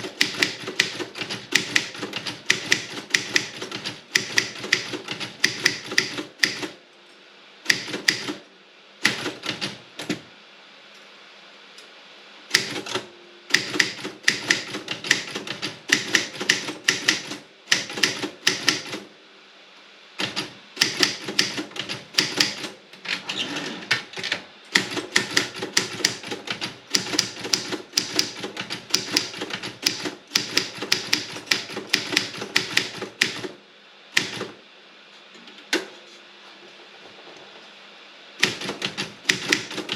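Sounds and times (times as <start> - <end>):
typewriter keystroke clacks: 0.0 - 6.8, 12.6 - 19.0, 20.2 - 22.7, 24.2 - 33.5, 38.4 - 39.9.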